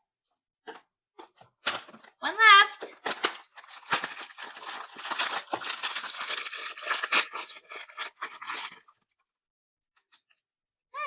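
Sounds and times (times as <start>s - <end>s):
packaging being torn and crinkled: 3.0s - 9.0s.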